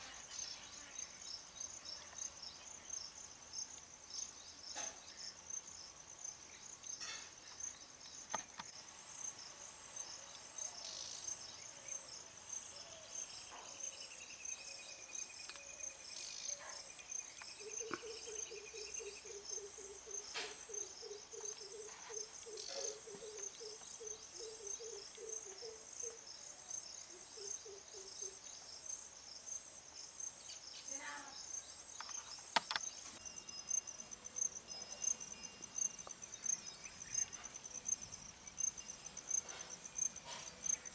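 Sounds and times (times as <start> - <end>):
high-pitched insect chirping: 0.2 - 40.9
scattered clicks: 32.0 - 32.9.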